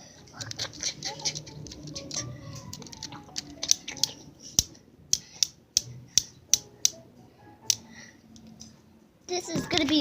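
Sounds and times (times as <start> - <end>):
sharp irregular clicks and taps: 0.4 - 7.0.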